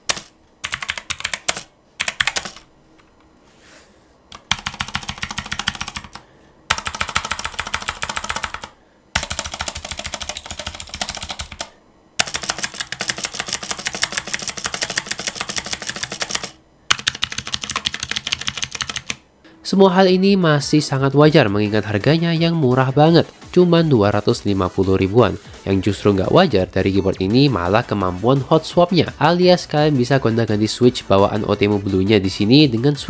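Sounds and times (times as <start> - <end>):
rapid typing on clicky keyboard: 0.0 - 2.6, 4.3 - 19.2.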